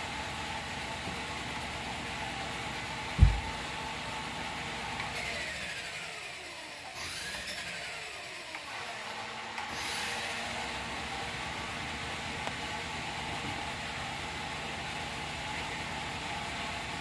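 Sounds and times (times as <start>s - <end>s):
toy electric motor whining: 5.2s - 10.6s.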